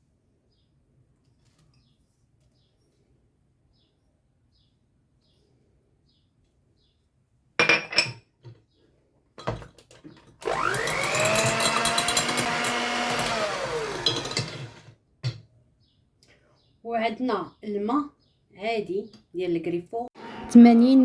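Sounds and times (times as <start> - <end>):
electric mixer whining: 10.4 - 14.9.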